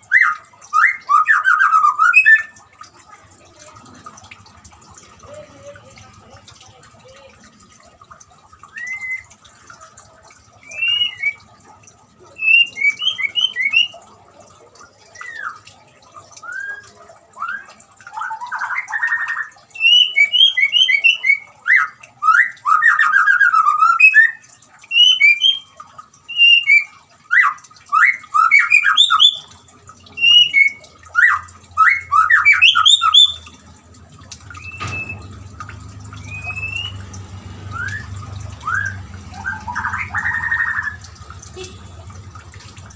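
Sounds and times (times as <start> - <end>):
bird singing whistled phrases: 0.1 - 2.6, 8.7 - 9.3, 10.6 - 11.5, 12.4 - 14.0, 16.4 - 25.7, 26.3 - 29.5, 30.1 - 33.6, 34.5 - 35.3, 36.2 - 37.1, 37.7 - 41.0.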